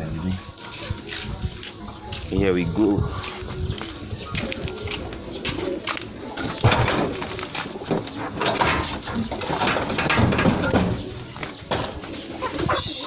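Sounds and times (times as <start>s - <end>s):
pigeons cooing: 0.0s - 13.0s
knocks and rustles: 5.5s - 12.7s.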